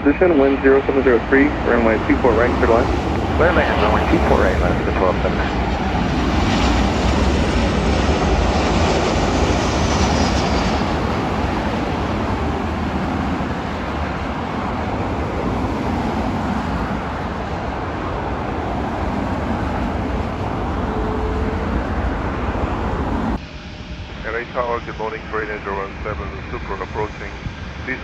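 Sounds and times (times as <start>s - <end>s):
faint falling whine: 0.0s - 7.6s
jet airliner engines landing: 0.0s - 28.0s.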